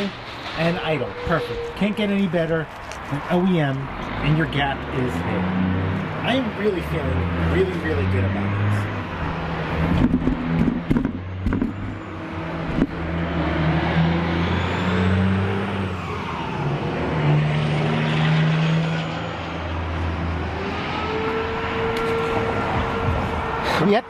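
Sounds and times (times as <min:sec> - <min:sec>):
passing cars and trucks: 0:00.0 - 0:24.0
sharp knocks: 0:09.9 - 0:11.8.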